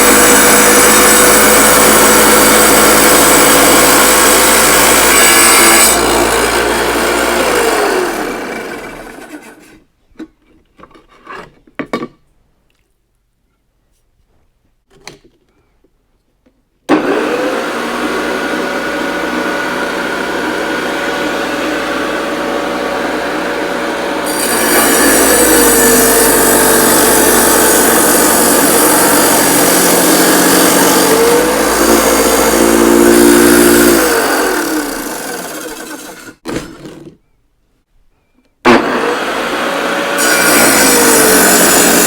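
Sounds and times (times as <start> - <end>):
saw blade cutting masonry: 0.0 - 9.8, 16.9 - 37.1, 38.7 - 42.0
wet saw motor whine: 17.0 - 36.3.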